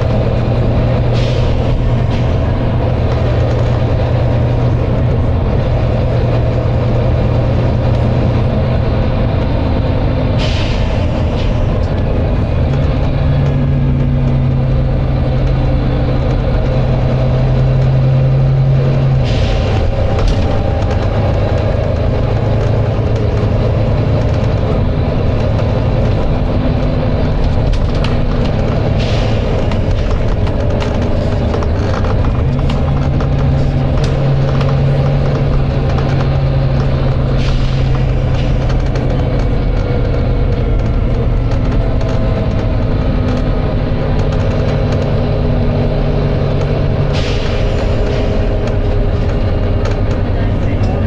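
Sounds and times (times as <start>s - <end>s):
bus diesel engine running: 0.0s - 51.0s.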